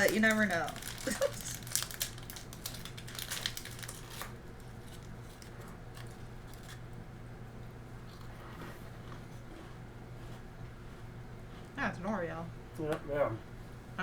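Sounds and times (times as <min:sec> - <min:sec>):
plastic wrapper crinkling: 0:00.0 - 0:06.8
low steady hum: 0:00.0 - 0:14.0.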